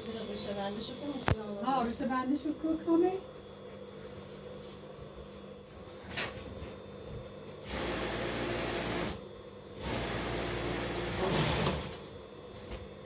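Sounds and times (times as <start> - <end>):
sewing machine stitching: 9.8 - 12.2.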